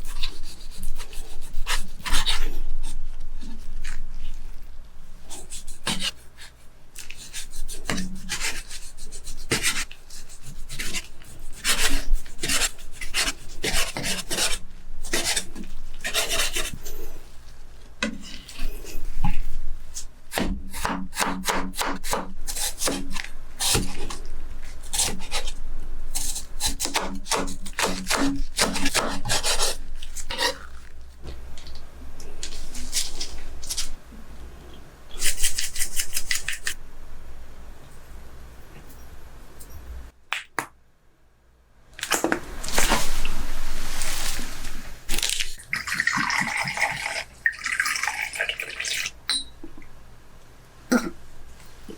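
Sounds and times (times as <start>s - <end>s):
knife slicing raw chicken: 26.6s - 30.6s.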